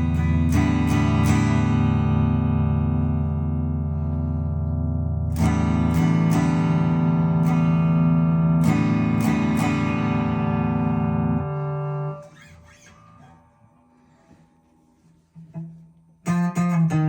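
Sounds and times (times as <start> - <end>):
overdriven electric guitar: 0.0 - 14.6, 15.4 - 17.0
faint handling noises: 12.5 - 16.3.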